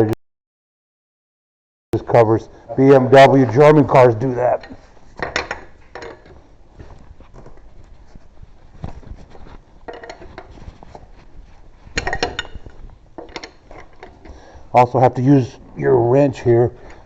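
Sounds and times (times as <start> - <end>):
hardware clattering: 2.8 - 6.4, 9.8 - 10.7, 11.9 - 14.4
hand tools clinking: 9.8 - 10.6, 11.9 - 14.4.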